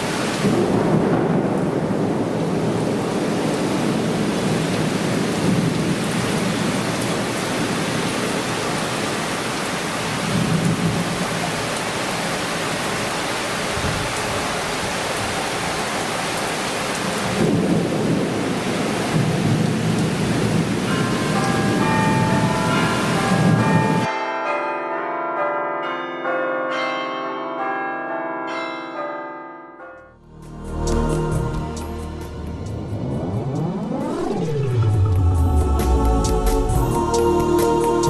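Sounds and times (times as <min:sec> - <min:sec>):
thunder rumbling: 0:00.0 - 0:06.8, 0:17.2 - 0:24.1, 0:30.4 - 0:38.0
heavy rain hissing: 0:00.0 - 0:24.1, 0:30.4 - 0:38.0.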